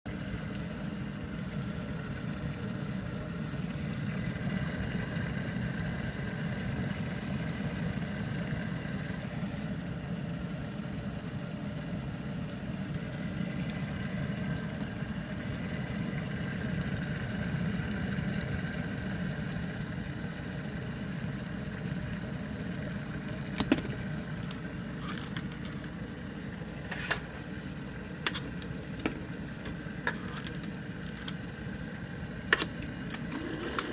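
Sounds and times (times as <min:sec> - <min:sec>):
electric kettle heating water: 0:00.1 - 0:33.9
kettle clicks: 0:23.5 - 0:25.9, 0:28.2 - 0:33.9.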